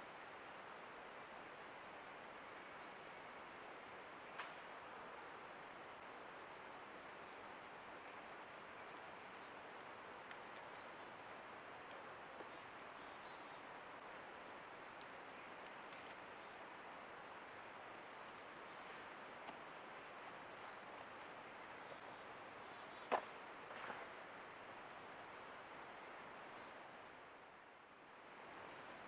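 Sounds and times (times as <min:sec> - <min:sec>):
creek water flowing: 0:00.0 - 0:29.0.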